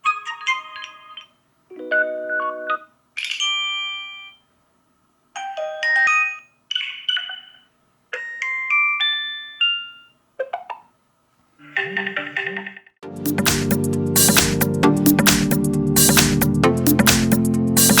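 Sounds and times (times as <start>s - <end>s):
phone notification chimes: 1.8s - 4.4s.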